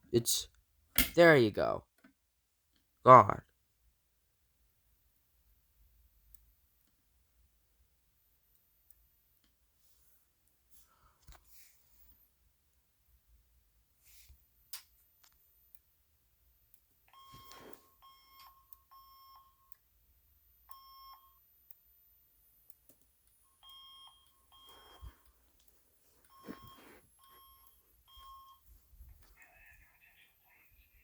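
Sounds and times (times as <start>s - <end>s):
faint fire alarm beeps: 17.0s - 29.3s.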